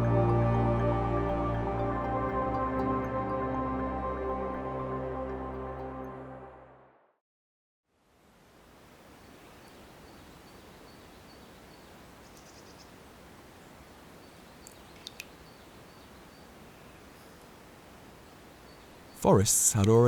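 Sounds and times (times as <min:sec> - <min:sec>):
soft steady hiss: 0:07.9 - 0:20.0.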